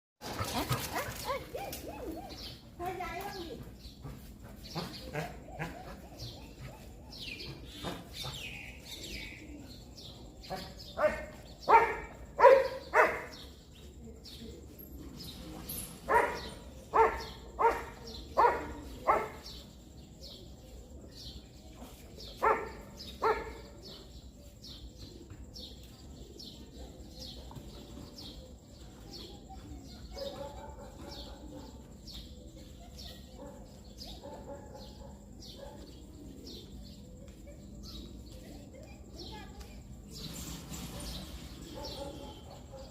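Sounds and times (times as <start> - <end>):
small birds chirping: 0.2 - 42.9
dog barking: 10.5 - 13.4, 16.1 - 19.4, 22.4 - 23.7, 30.1 - 31.9, 33.4 - 35.9, 41.0 - 42.9.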